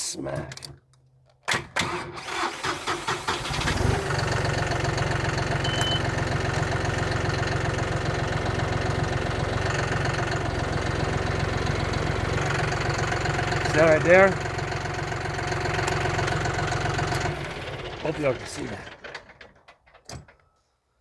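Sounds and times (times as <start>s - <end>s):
vehicle engine starting and idling: 1.5s - 20.5s.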